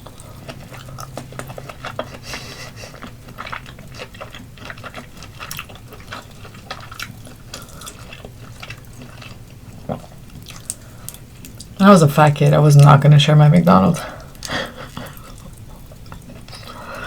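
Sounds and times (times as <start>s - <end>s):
wet chewing mouth clicks: 0.0s - 11.8s
faint low hum: 0.0s - 17.0s.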